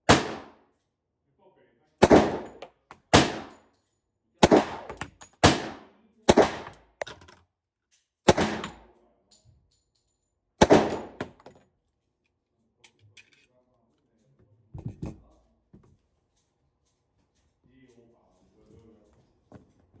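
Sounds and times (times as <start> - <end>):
muffled pistol shots: 0.1 - 0.6, 2.0 - 3.6, 4.4 - 6.8, 8.3 - 8.8, 10.6 - 11.2.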